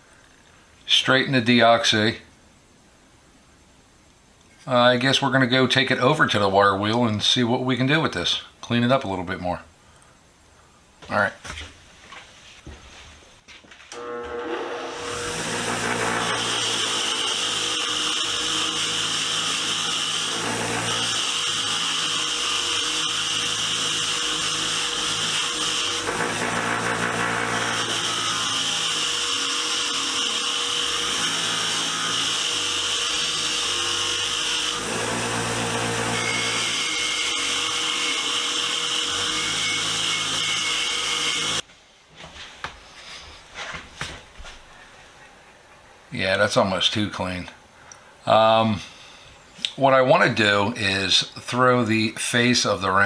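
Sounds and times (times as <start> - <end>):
wire wheel motor hum: 14.0 - 41.6.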